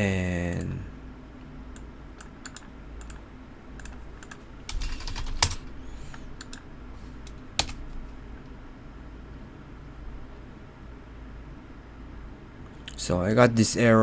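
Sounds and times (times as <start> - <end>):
computer keyboard keys clicking: 1.7 - 3.2, 3.8 - 7.9.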